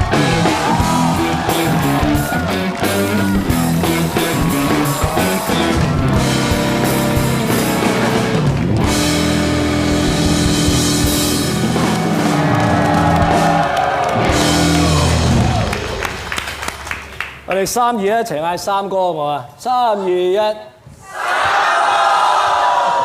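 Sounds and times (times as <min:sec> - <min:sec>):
electric guitar: 0:00.0 - 0:16.2
drum kit: 0:00.0 - 0:16.6
rock band playing: 0:00.0 - 0:16.7.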